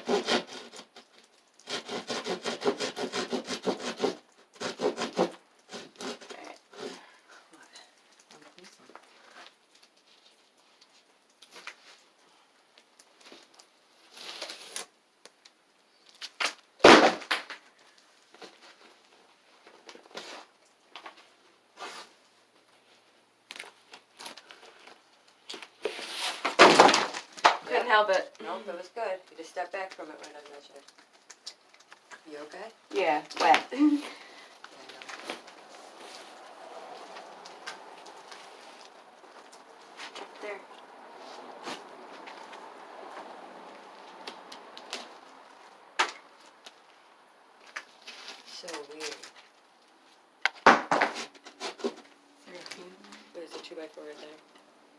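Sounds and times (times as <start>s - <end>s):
hand saw cutting: 0.0s - 7.0s
drywall crackling and crunching: 0.0s - 54.6s.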